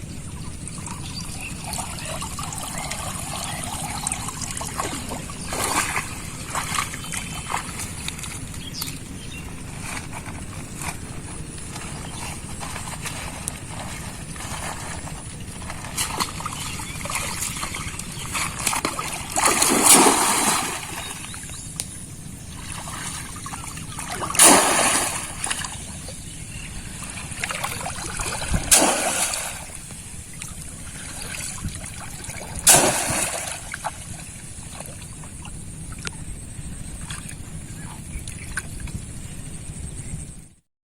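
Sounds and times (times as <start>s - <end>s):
water trickling and sloshing: 0.0s - 36.3s
loud splashes in pond: 1.4s - 7.8s, 14.4s - 21.4s, 22.6s - 26.1s, 26.9s - 29.9s, 30.5s - 34.9s.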